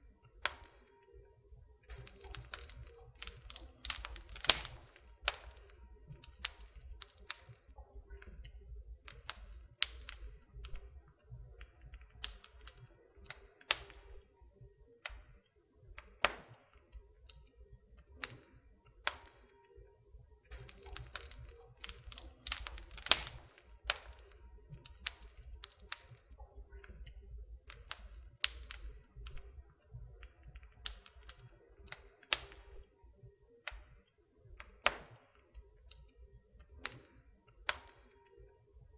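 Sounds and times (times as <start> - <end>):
campfire crackling: 1.9 - 14.2, 20.5 - 32.8.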